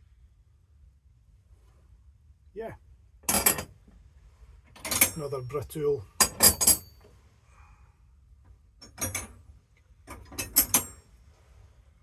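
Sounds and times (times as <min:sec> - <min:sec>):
metal spanners clinking: 0:04.8 - 0:05.5.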